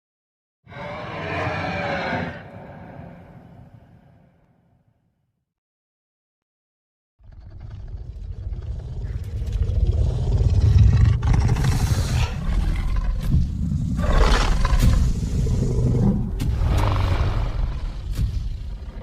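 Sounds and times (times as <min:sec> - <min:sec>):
big cat roar: 0:00.7 - 0:04.0, 0:07.2 - 0:18.1.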